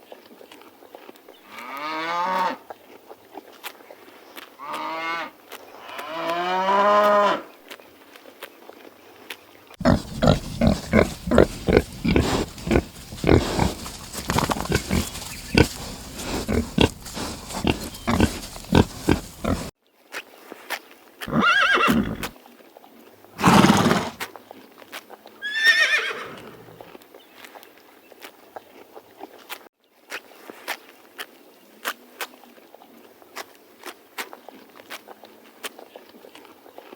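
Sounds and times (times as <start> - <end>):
animal calls: 9.8 - 19.7, 21.3 - 22.3
animal grunting pulses: 9.8 - 19.7, 21.3 - 22.3, 23.4 - 24.2.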